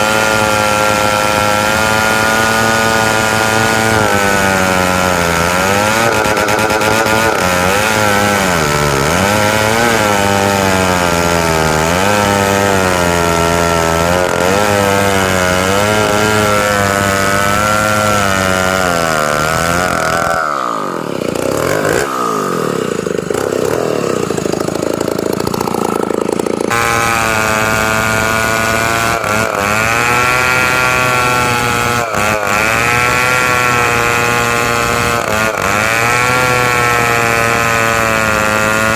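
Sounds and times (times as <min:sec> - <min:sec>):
chainsaw ripping timber: 0:00.0 - 0:38.9
rough engine sound: 0:00.0 - 0:38.9.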